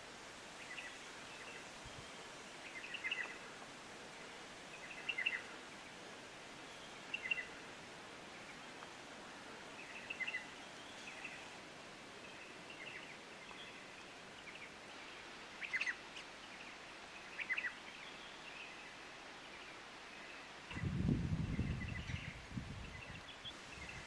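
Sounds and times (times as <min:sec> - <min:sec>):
faint background hiss: 0:00.0 - 0:24.0
birds chirping: 0:12.2 - 0:24.0.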